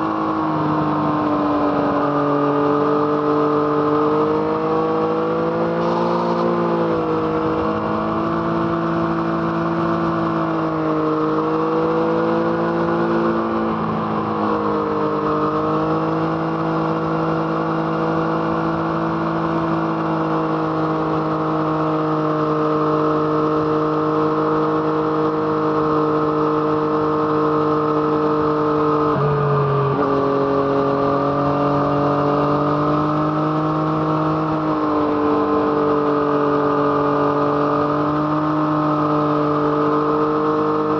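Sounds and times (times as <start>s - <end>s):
motorcycle engine while riding: 0.0s - 40.9s.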